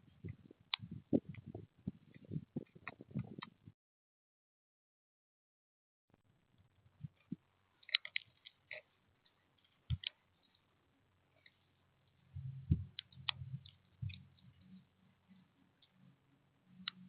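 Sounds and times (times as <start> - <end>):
low thuds: 12.4 - 14.2.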